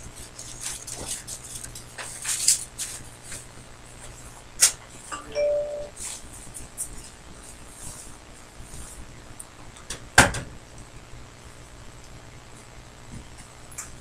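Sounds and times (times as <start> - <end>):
paper and cards rustling: 0.2 - 4.2
two-note chime: 5.2 - 5.9.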